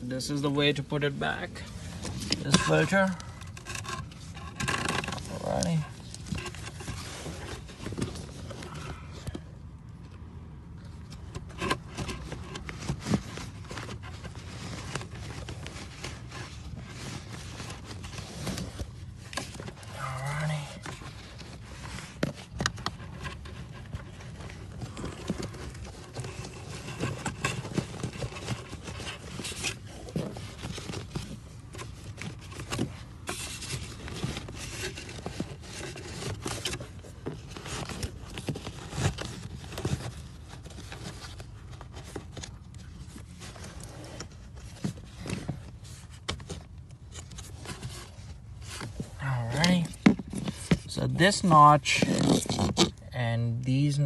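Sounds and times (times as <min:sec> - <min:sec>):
air filter scraping and clicking: 0:00.0 - 0:10.2, 0:10.8 - 0:53.1.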